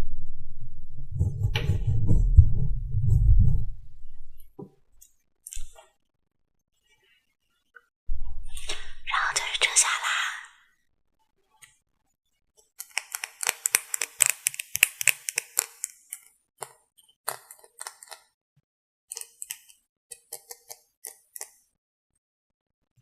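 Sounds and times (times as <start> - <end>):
makeup tools clicking and tapping: 12.8 - 18.2, 19.1 - 21.5.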